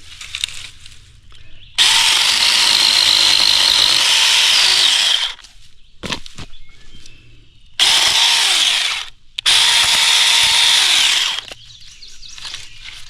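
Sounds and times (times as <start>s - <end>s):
electric mini chainsaw cutting wood: 1.8s - 5.4s, 7.8s - 11.5s.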